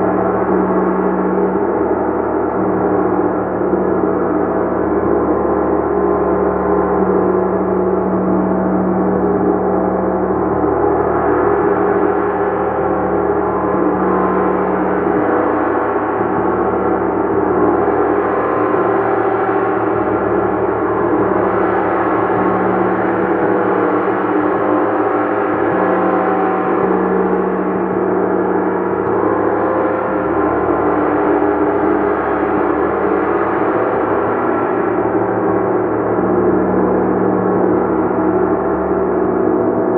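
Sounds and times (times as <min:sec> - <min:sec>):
gong sustained tones: 0:00.0 - 0:39.9.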